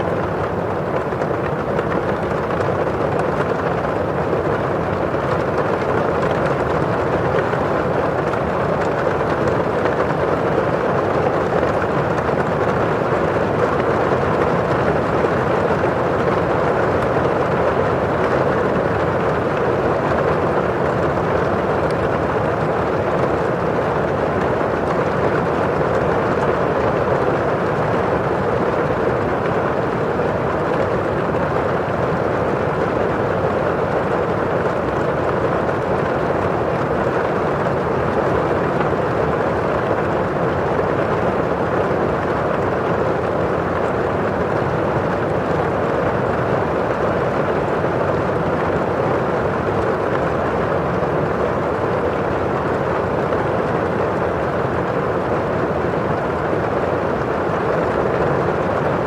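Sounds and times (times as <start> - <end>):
rain on a window: 0.0 - 59.0.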